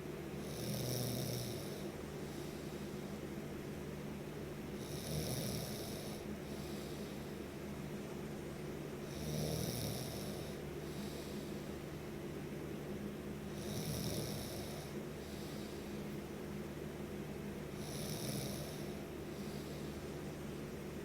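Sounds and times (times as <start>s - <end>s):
snoring: 0.4s - 1.8s, 4.8s - 6.2s, 9.1s - 10.6s, 13.6s - 15.0s, 17.8s - 19.0s.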